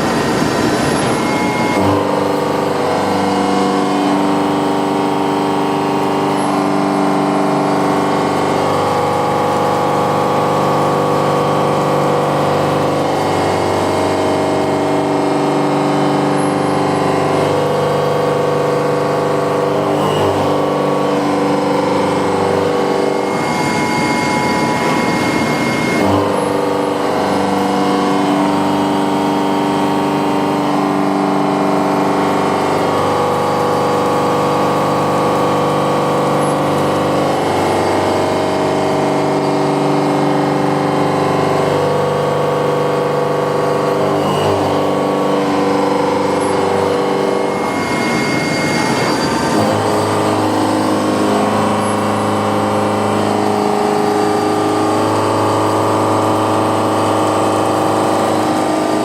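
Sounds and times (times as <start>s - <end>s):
milling machine cutting metal: 0.0s - 59.0s.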